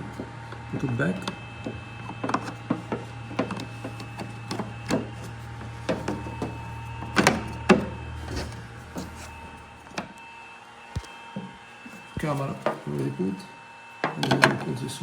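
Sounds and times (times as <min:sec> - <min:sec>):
steady low hum: 0:00.0 - 0:13.8
plastic trim parts knocking and clicking: 0:01.2 - 0:07.9.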